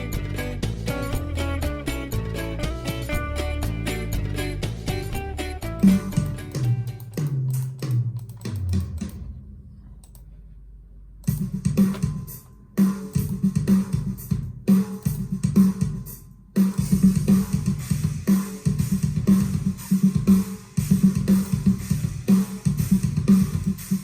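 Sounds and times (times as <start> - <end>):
low guitar chugs: 0.0 - 7.0
kick drum hits: 11.3 - 12.4, 16.8 - 24.0.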